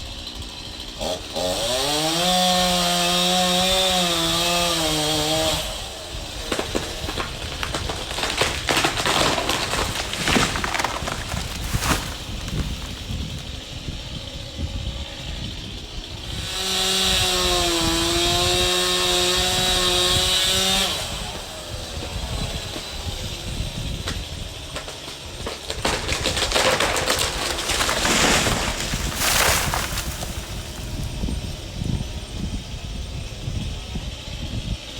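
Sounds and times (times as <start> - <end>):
chainsaw at full throttle: 0.0 - 34.9.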